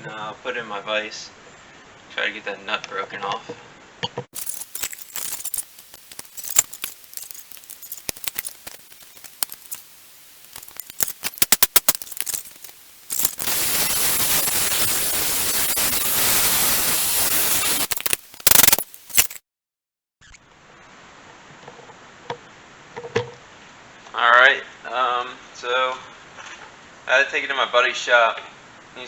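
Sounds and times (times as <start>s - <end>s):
loud steady hiss: 4.4s - 19.4s.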